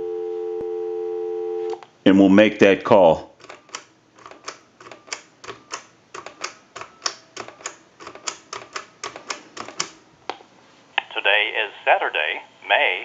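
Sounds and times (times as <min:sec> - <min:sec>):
telephone dial clicks: 0:03.4 - 0:10.0.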